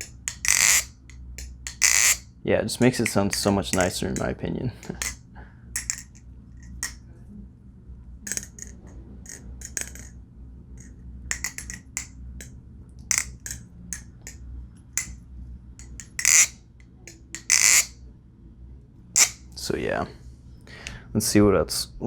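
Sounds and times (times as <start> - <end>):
butterfly knife clicking and clacking: 0.0 - 2.2, 2.9 - 5.2, 5.8 - 7.0, 8.3 - 10.1, 10.8 - 12.5, 13.1 - 14.4, 15.8 - 17.9, 19.2 - 19.4.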